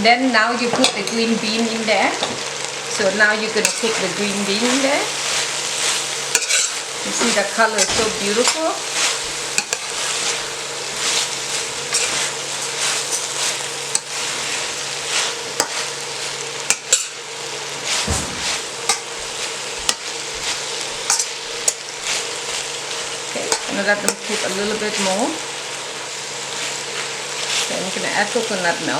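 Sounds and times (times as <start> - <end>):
vegetables sizzling in oil: 0.0 - 28.9
utensil scraping pan: 3.6 - 10.4, 11.0 - 15.8.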